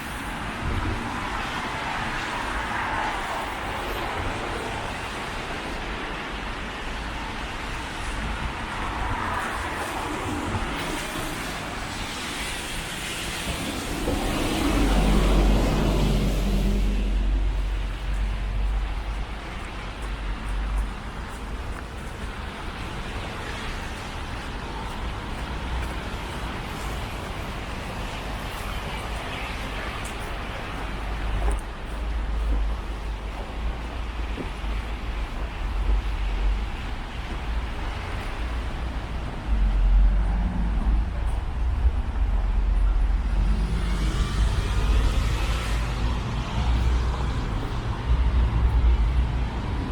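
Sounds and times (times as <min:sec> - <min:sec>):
road traffic noise: 0:00.0 - 0:49.9
low rumble: 0:32.0 - 0:49.9.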